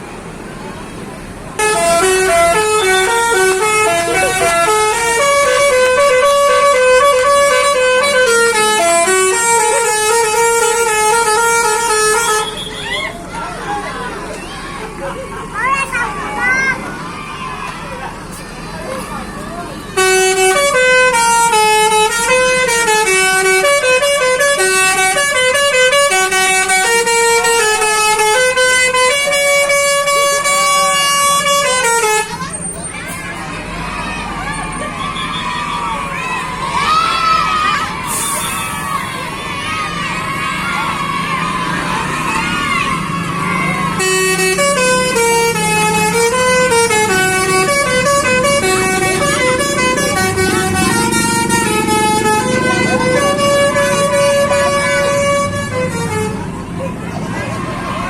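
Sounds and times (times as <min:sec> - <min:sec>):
multi-tone bus horn playing tune: 0:01.6 - 0:13.2, 0:19.8 - 0:32.7, 0:36.8 - 0:39.6, 0:40.2 - 0:56.9.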